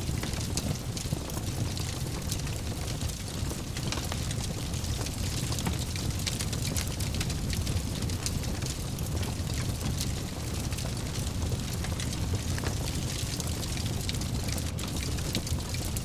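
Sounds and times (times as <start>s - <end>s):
fire crackling in fireplace: 0.0s - 16.0s.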